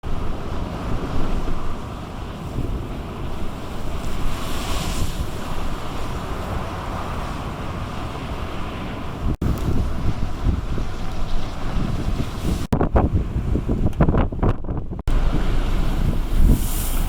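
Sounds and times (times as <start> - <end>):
surf washing over promenade: 0.0 - 17.0
wind buffeting microphone: 0.0 - 17.0
hissing rush of water: 15.1 - 17.0.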